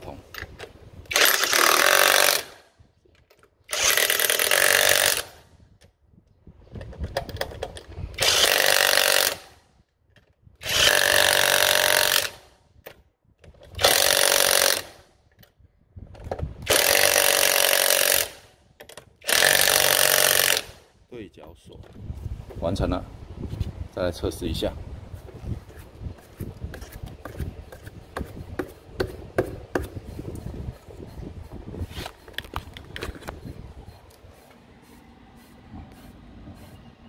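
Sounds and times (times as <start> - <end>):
impact wrench hammering lug nuts: 27.8 - 30.0.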